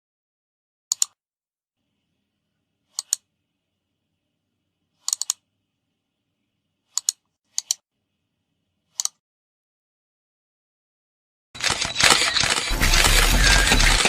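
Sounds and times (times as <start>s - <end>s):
camera shutter clicks: 11.6s - 14.0s.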